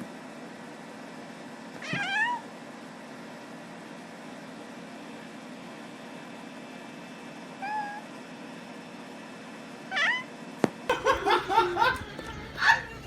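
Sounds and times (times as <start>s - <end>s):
cat meowing: 1.8s - 2.4s, 7.6s - 8.0s, 9.9s - 10.3s.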